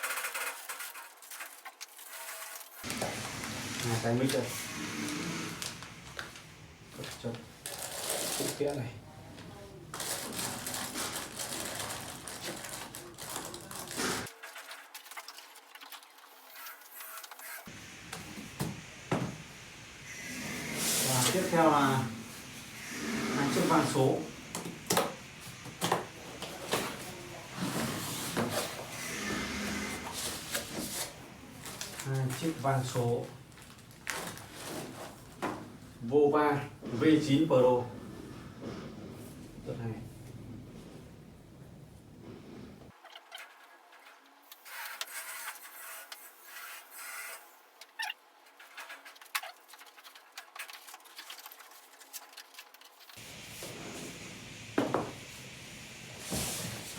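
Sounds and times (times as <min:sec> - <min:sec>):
packaging rustling: 0:00.3 - 0:08.8, 0:09.9 - 0:16.1, 0:30.1 - 0:35.4, 0:48.8 - 0:53.3.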